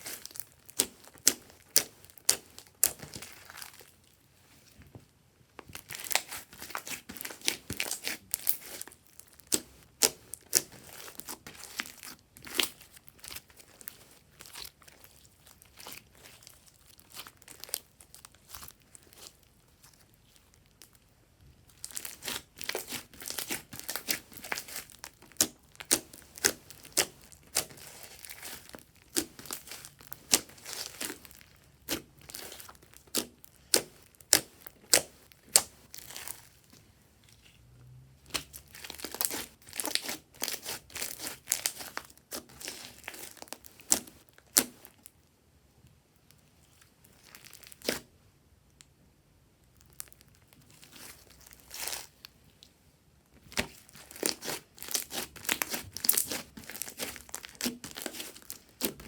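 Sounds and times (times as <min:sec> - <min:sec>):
slime crackling and clicking: 0:21.8 - 0:36.5, 0:38.3 - 0:45.0, 0:53.5 - 0:59.0.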